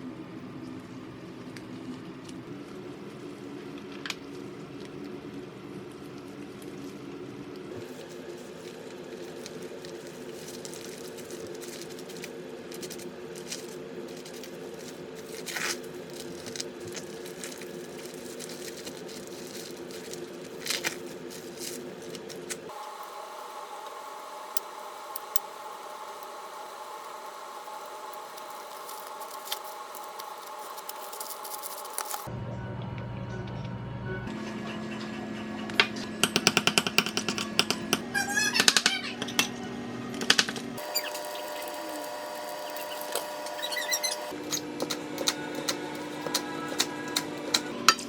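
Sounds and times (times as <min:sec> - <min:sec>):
steady appliance hum: 0:00.0 - 0:48.0
cooking crackling: 0:01.6 - 0:32.3, 0:40.3 - 0:48.0.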